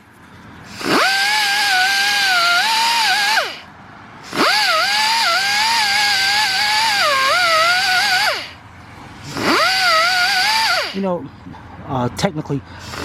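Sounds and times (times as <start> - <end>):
angle grinder whining: 0.7 - 8.6, 9.2 - 11.0.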